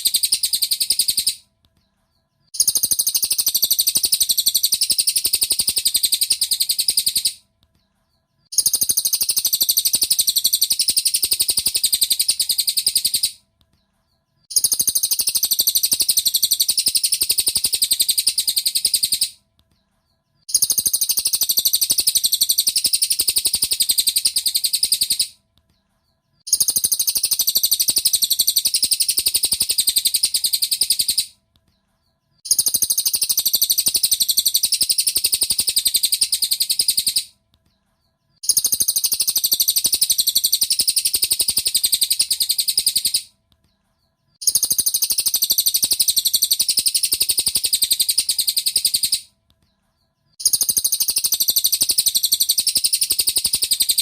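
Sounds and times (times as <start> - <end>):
bird trilling chatter: 0.0 - 1.4, 2.6 - 7.4, 14.5 - 19.4, 32.5 - 37.3, 38.4 - 43.3, 50.4 - 54.0.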